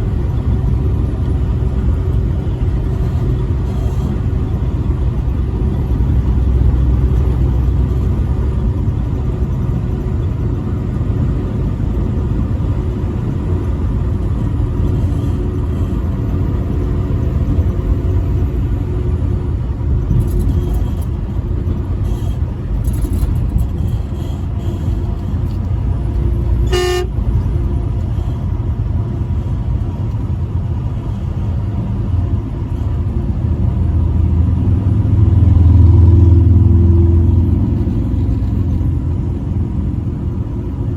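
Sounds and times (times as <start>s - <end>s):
truck engine and road rumble: 0.0s - 40.9s
truck horn blast: 26.6s - 27.3s.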